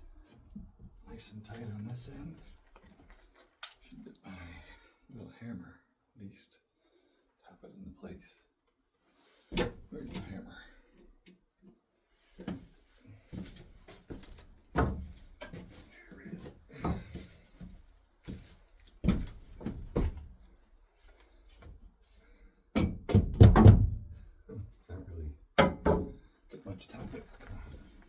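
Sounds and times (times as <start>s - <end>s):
wooden knocks and thuds: 14.1s - 15.8s, 16.7s - 20.4s, 22.8s - 24.2s, 25.6s - 26.2s.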